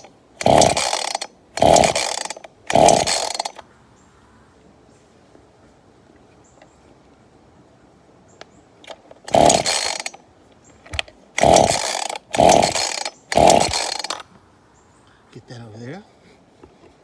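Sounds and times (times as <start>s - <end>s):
chainsaw recoil starter whirring: 0.0s - 3.6s, 8.8s - 10.2s, 10.8s - 14.3s.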